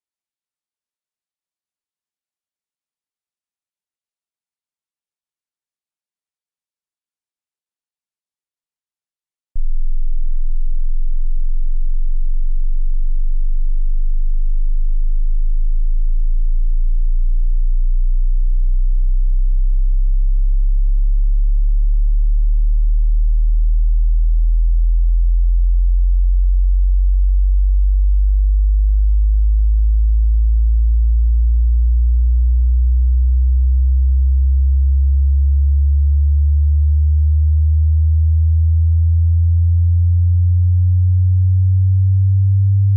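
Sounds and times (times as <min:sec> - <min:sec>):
rising sine tone sweep: 0:09.6 - 0:24.8.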